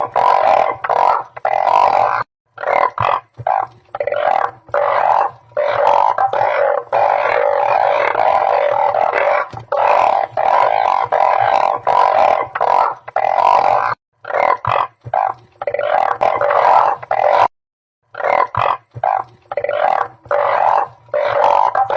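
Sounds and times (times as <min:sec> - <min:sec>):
frogs calling: 0:00.0 - 0:17.5, 0:18.1 - 0:21.9.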